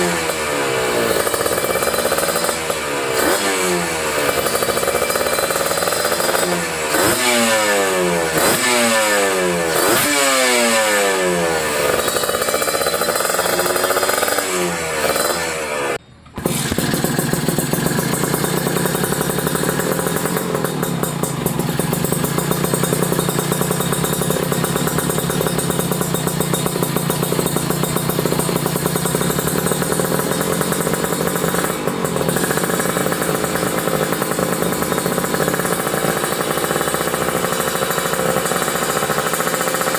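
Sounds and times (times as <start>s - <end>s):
motorcycle engine revving and idling: 0.0s - 39.9s.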